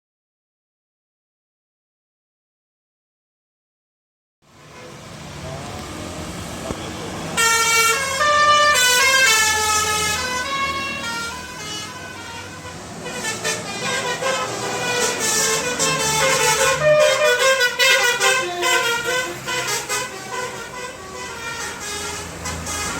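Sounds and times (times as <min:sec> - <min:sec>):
bus engine running: 0:04.5 - 0:22.9
musical air horn melody: 0:07.4 - 0:22.9.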